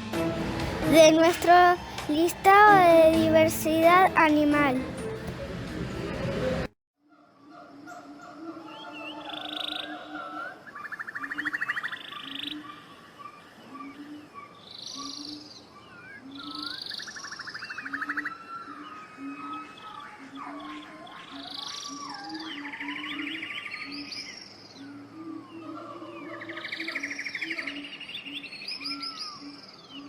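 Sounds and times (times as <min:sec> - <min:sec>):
birds whistling and trilling: 0:08.2 - 0:30.0.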